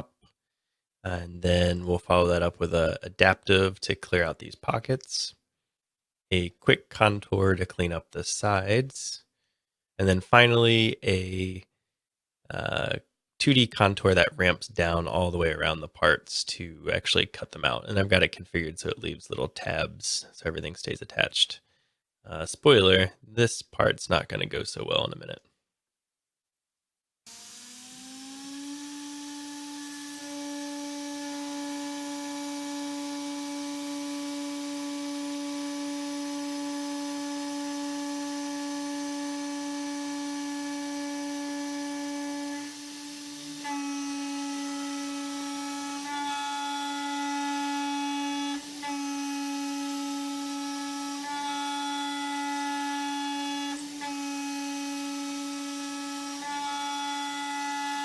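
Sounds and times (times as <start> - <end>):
router spindle whining while milling: 27.3 - 58.0.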